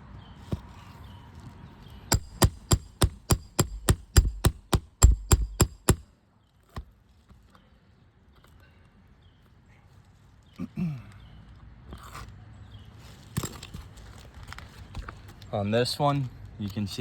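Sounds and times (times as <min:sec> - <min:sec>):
hammer striking metal tool: 0:02.1 - 0:06.0.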